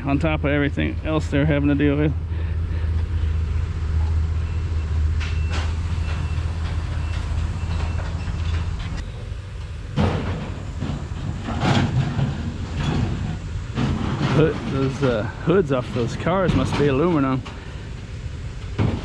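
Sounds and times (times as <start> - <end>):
vehicle engine humming: 0.0 - 19.0
loud knocks and rattles: 2.7 - 9.0, 10.0 - 17.7.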